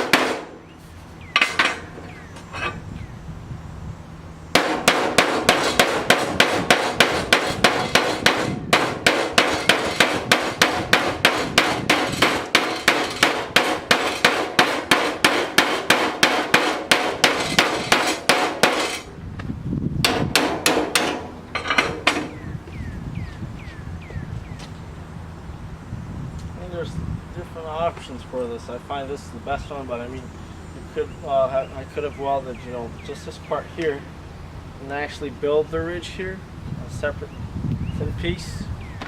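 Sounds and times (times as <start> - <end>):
hammer striking sheet steel: 0.0 - 0.6, 4.6 - 19.1, 20.0 - 22.4.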